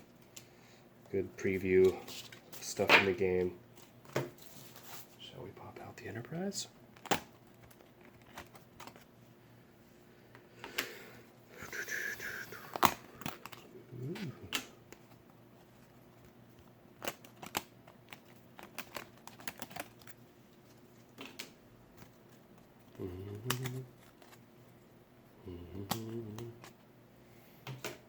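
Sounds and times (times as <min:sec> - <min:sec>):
crinkle: 0:03.7 - 0:05.3, 0:06.9 - 0:09.2, 0:12.8 - 0:24.8
cardboard pieces clicking and snapping: 0:07.0 - 0:09.0, 0:16.2 - 0:20.2, 0:21.1 - 0:22.6, 0:23.3 - 0:24.4, 0:25.8 - 0:26.8.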